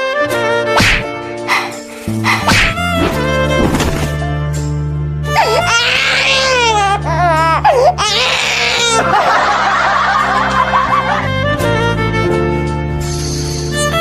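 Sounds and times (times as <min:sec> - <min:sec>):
background music: 0:00.0 - 0:14.0
high-pitched cartoon voice wailing: 0:05.4 - 0:09.0.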